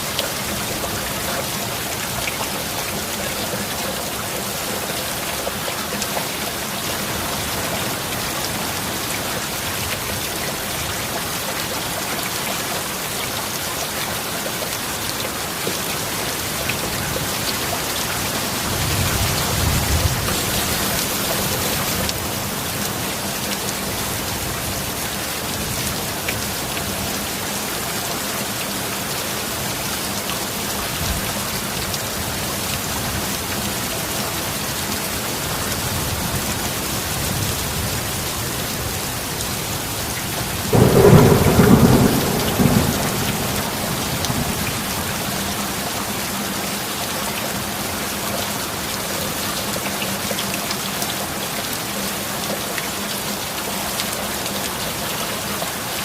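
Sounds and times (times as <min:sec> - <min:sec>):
heavy rain falling: 0:00.0 - 0:56.0
thunder clap rumbling: 0:40.5 - 0:45.8.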